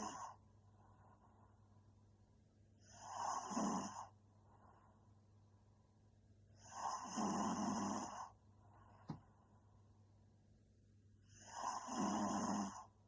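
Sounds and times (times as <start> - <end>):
woman snoring: 0.0 - 0.4, 2.9 - 4.1, 6.6 - 8.4, 11.3 - 12.9.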